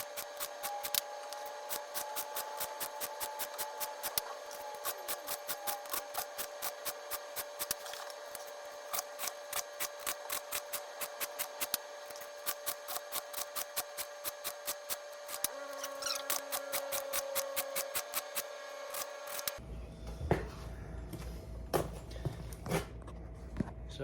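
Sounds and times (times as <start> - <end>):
file rasping on chainsaw chain: 0.0 - 8.0, 8.9 - 19.6.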